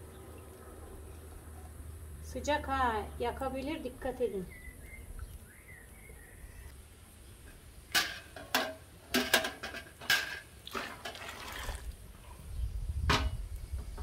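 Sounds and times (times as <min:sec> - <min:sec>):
water pouring into pot: 0:10.6 - 0:11.9.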